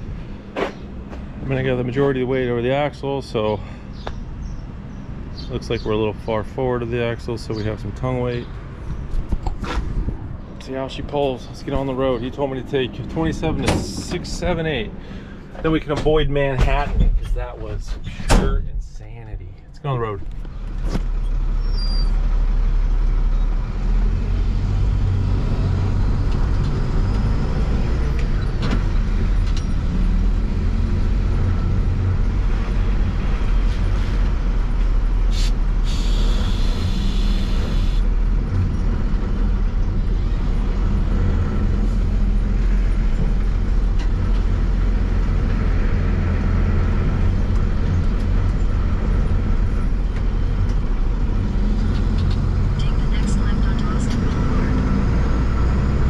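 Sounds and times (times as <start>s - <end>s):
road noise: 0.0s - 56.0s
truck engine drone: 0.0s - 56.0s
short hiss: 35.3s - 38.0s.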